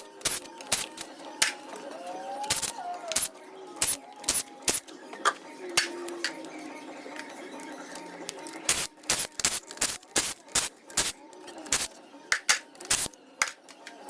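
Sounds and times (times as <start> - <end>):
faint background music: 0.0 - 14.0.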